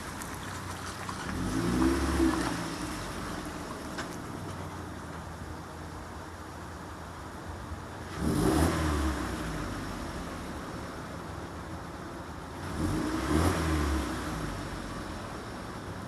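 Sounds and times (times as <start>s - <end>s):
car engine revving: 0.0s - 4.1s, 8.1s - 10.8s, 12.6s - 15.4s.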